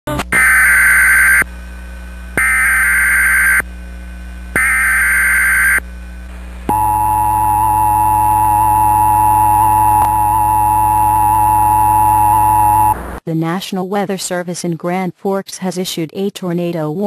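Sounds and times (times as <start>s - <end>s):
screeching digital data bursts: 2.4s - 3.6s, 4.6s - 5.8s
steady attention tone: 4.5s - 5.8s, 6.7s - 13.2s.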